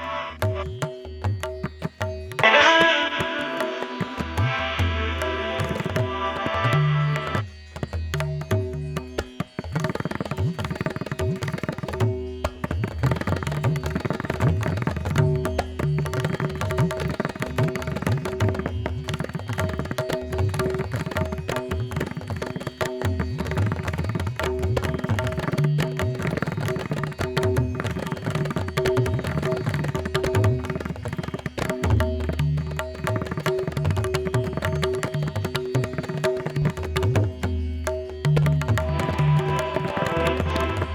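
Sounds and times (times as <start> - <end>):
tabla drumming: 0.0 - 40.9
steady drone: 38.8 - 40.9.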